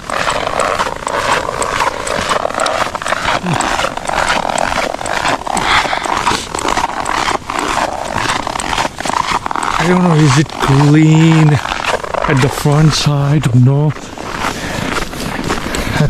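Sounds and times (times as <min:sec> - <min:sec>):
footsteps crunching in snow: 0:00.0 - 0:16.0.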